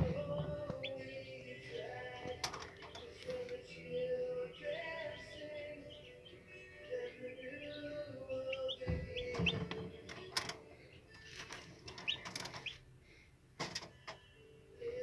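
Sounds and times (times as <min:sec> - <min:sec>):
chicks peeping: 0:00.0 - 0:12.9
handling knocks and clicks: 0:08.8 - 0:10.7, 0:11.3 - 0:12.7, 0:13.6 - 0:14.2.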